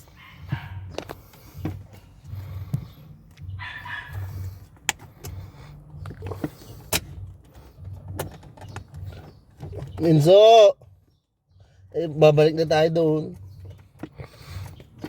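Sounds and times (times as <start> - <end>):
low pulsing hum: 0.0 - 10.0.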